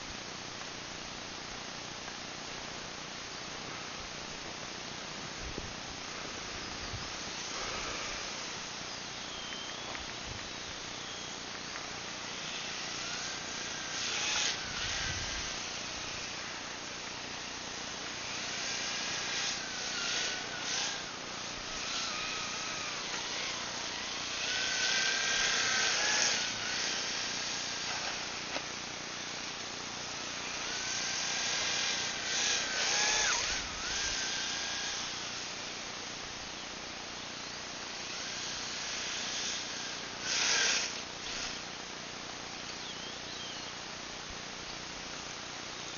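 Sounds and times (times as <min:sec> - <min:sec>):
bursts of hiss: 0:05.2 - 0:36.3
electric motor whining: 0:06.3 - 0:16.7, 0:17.4 - 0:35.7, 0:38.0 - 0:41.6.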